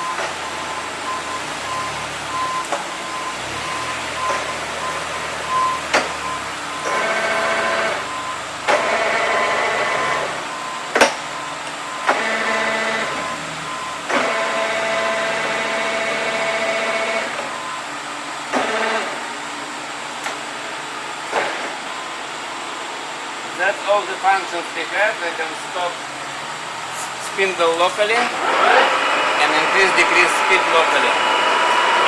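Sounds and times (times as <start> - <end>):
lathe traverse whine: 0.0 - 24.2, 25.0 - 32.0
lathe running: 2.8 - 10.6, 26.0 - 32.0.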